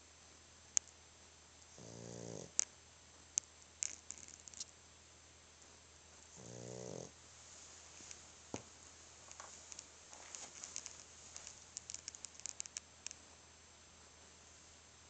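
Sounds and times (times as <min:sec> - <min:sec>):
dog snoring: 0:01.7 - 0:02.6, 0:06.3 - 0:07.2
sharp clicks: 0:10.5 - 0:13.2.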